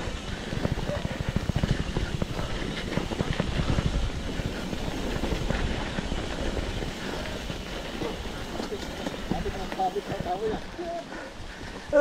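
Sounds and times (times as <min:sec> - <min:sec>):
bike frame and tyres rattling: 0:00.0 - 0:12.0
bike rumbling over rocky trail: 0:00.0 - 0:12.0.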